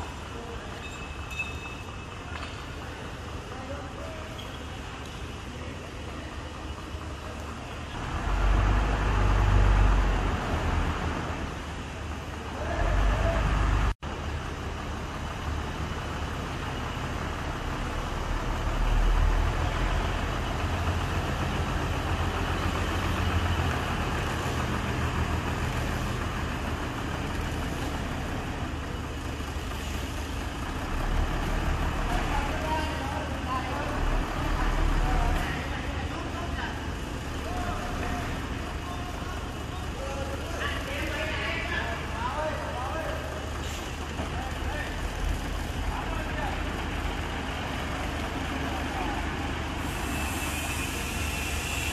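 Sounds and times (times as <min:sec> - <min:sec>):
vehicle engine and road rumble: 0:00.0 - 0:51.9.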